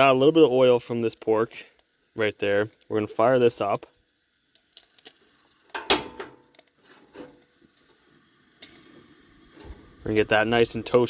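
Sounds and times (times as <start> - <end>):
camp cooking gear clattering: 4.6 - 7.9.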